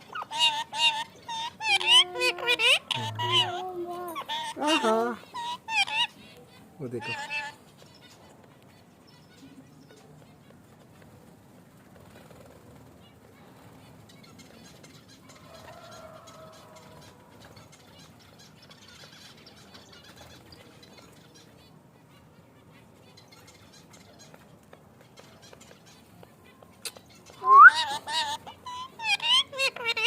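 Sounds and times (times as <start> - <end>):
parakeet drawn-out call: 0.0 - 6.2, 7.0 - 7.6, 27.4 - 30.0
faint high bird chirps: 25.2 - 30.0.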